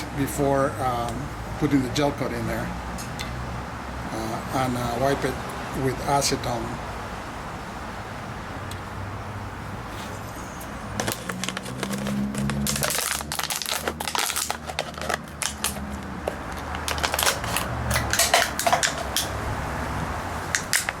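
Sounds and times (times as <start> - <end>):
plastic bottle crinkling: 10.9 - 19.4.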